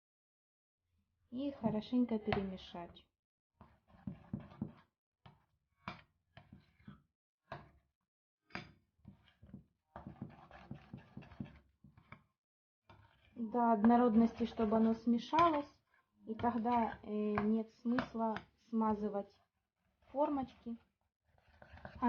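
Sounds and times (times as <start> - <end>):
spoon stirring thick batter: 3.6 - 7.8, 8.5 - 22.0.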